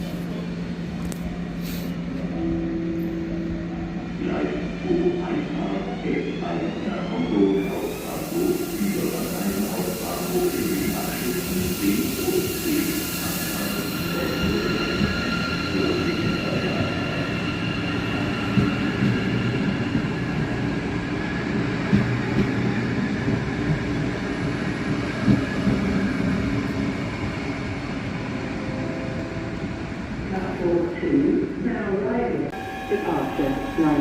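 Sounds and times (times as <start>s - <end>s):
train wheels rumbling on track: 7.6s - 34.0s.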